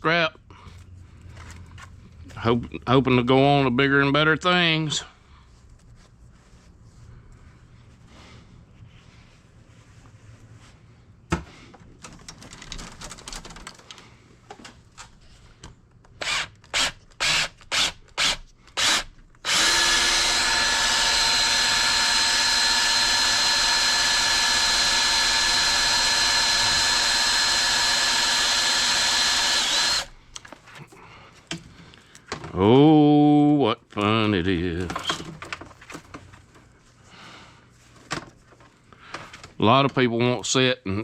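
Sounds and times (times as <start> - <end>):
electric drill motor whining: 16.2 - 30.2.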